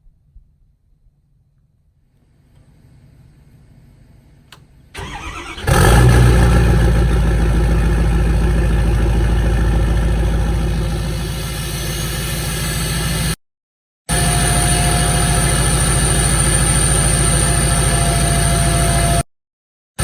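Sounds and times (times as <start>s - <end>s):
engine cranking and running: 5.0s - 13.4s, 14.1s - 19.2s.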